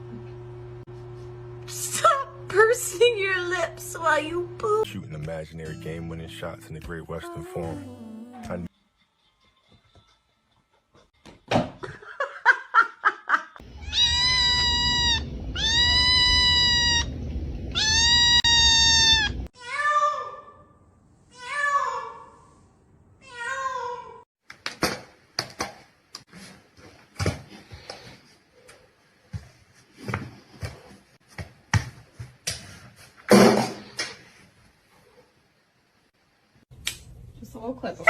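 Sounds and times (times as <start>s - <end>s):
cat meowing: 13.7s - 17.1s, 17.7s - 19.5s.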